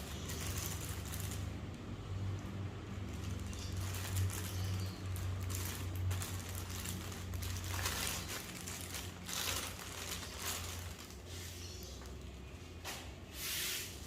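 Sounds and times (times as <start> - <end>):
packaging rustling and scraping: 0.0 - 1.6, 3.0 - 12.3.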